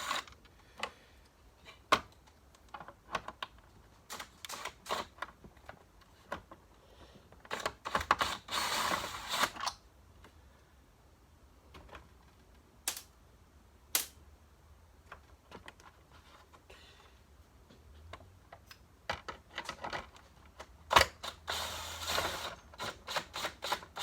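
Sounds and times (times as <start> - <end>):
plastic parts and screws clicking: 1.7 - 6.6, 7.3 - 9.8
rustling scraping noise: 15.9 - 16.6.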